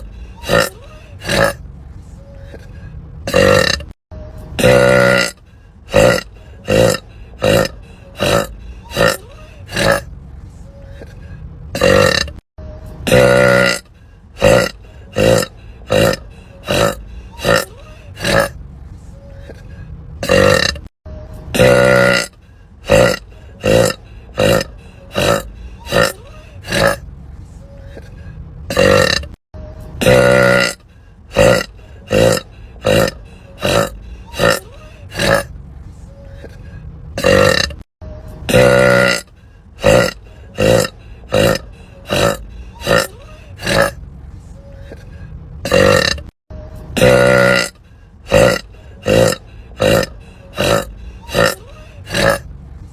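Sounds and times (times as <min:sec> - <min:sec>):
woman burping: 0:03.3 - 0:04.0, 0:04.6 - 0:10.0, 0:11.8 - 0:12.4, 0:13.0 - 0:13.8, 0:20.2 - 0:20.9, 0:21.5 - 0:22.3, 0:28.7 - 0:29.4, 0:30.0 - 0:30.8, 0:37.2 - 0:37.8, 0:38.5 - 0:39.2, 0:39.8 - 0:44.0, 0:45.6 - 0:46.3, 0:47.0 - 0:47.7, 0:48.3 - 0:52.4.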